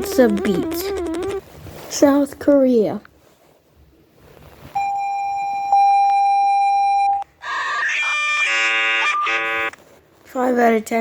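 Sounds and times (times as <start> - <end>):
harsh buzzy alert sound: 0.0 - 1.4, 7.4 - 9.8.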